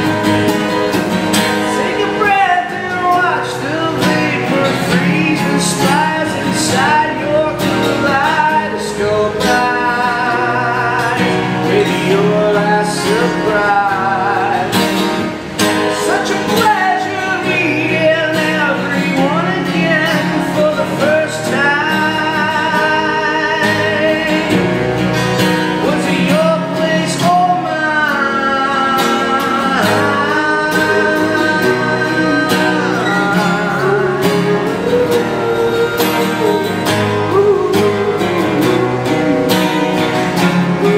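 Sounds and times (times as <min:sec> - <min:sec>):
guitar: 0:00.0 - 0:40.9
person singing: 0:01.6 - 0:14.8, 0:25.8 - 0:40.9.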